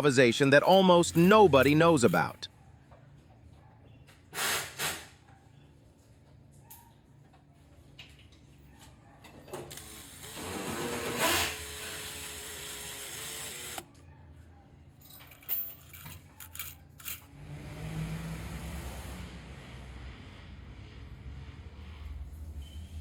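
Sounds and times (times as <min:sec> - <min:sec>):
small power tool whining: 0:09.7 - 0:13.8.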